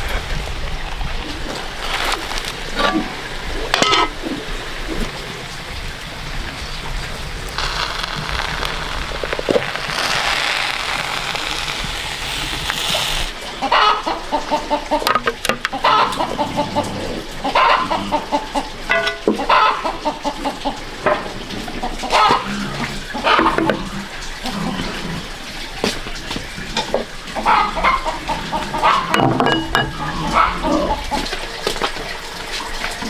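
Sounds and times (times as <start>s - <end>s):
steady hiss: 0.0s - 13.7s
chickens clucking: 1.2s - 4.6s, 13.3s - 25.2s, 26.6s - 31.8s.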